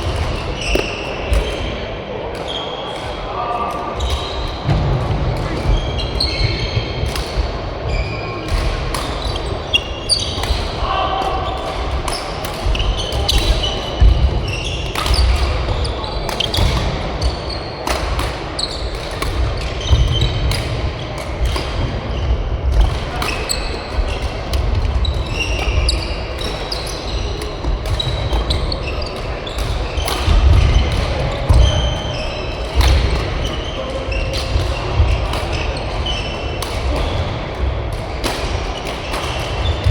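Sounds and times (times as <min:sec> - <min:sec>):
shoes squeaking on court floor: 0:05.7 - 0:10.7, 0:12.0 - 0:37.2
racket hitting shuttlecock: 0:08.4 - 0:17.0, 0:17.8 - 0:21.9, 0:22.7 - 0:39.9.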